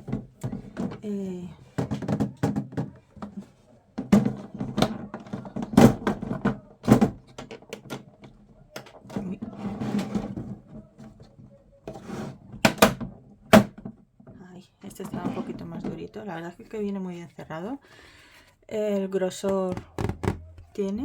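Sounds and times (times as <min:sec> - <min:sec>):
plastic box knocks and clicks: 0:01.8 - 0:03.3, 0:12.6 - 0:14.0, 0:19.4 - 0:21.0.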